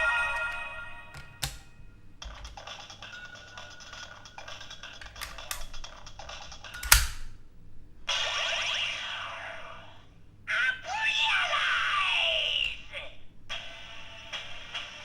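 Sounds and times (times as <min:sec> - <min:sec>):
sharp click: 0:06.7 - 0:07.4.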